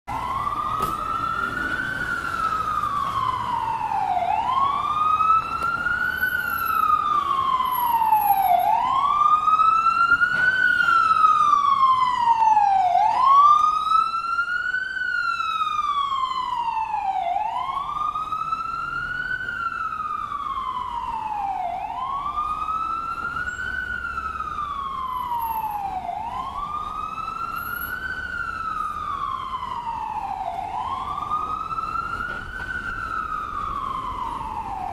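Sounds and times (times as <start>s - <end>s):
ambulance siren wailing: 0.1s - 34.9s.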